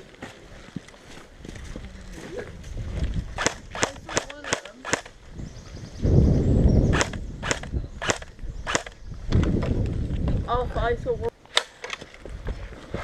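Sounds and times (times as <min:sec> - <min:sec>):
low rumble on microphone: 0:01.4 - 0:03.8, 0:05.2 - 0:11.3
airsoft gun shots: 0:03.4 - 0:05.1, 0:07.0 - 0:09.0.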